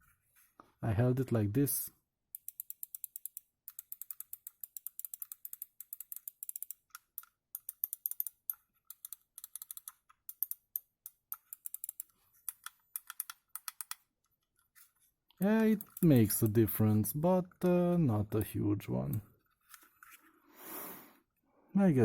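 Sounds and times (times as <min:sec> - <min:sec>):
mouse buttons clicking: 0:11.5 - 0:14.0.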